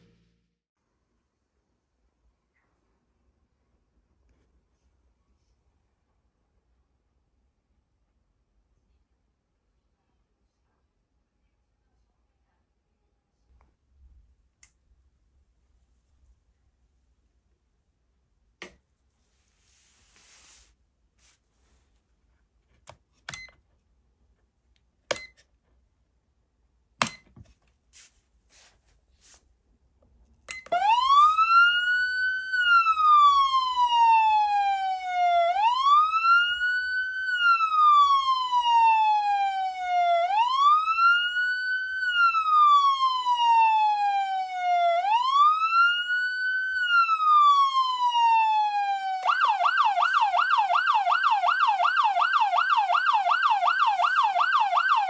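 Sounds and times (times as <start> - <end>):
siren fast yelp: 30.7 - 55.0
siren wailing: 30.7 - 55.0.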